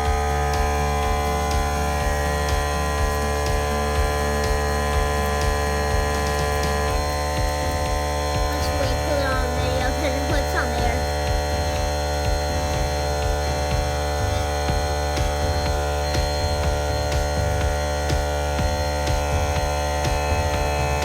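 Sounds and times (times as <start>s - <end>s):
fidget spinner humming: 0.0s - 21.0s.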